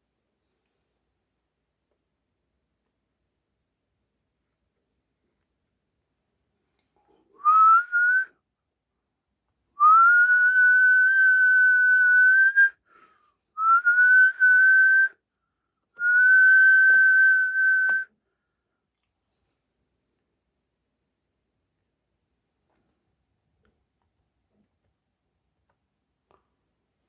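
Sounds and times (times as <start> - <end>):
person whistling a held note: 7.4 - 8.4, 16.0 - 18.1.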